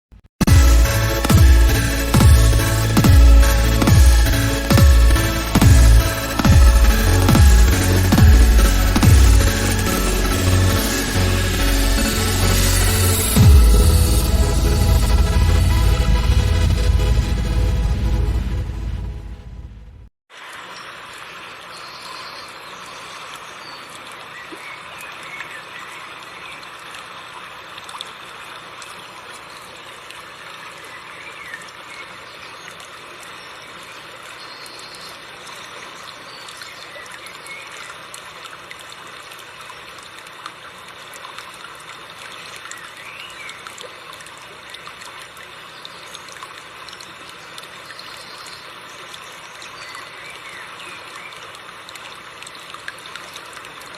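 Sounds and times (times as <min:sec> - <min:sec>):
river water babbling over rocks: 0:20.3 - 0:53.9.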